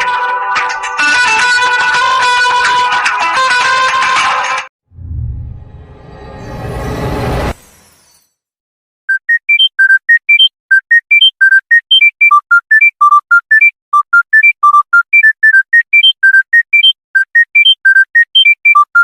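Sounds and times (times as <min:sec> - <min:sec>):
smartphone ringtone melody: 0:09.1 - 0:19.0.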